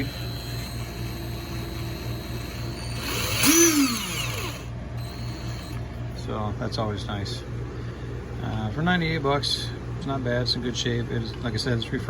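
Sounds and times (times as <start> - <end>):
impact driver motor revving: 0.0 - 5.9.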